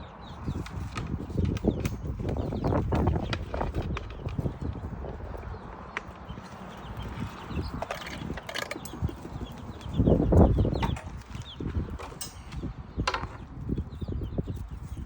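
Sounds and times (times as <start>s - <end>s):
chickens clucking: 0.5s - 14.1s.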